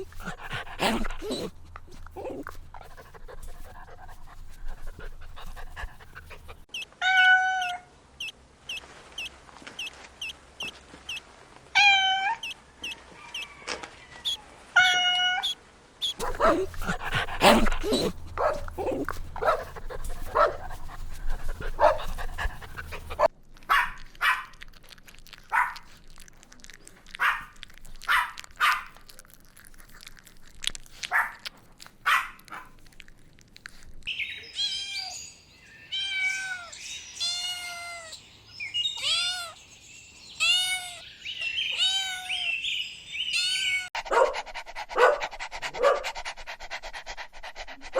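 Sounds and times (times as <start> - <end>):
puppies yipping and barking: 0.0 - 11.2, 12.0 - 24.5.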